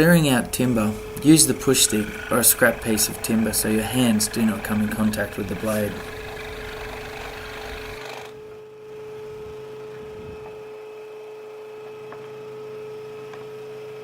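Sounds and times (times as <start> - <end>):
scroll saw humming: 0.0 - 8.6.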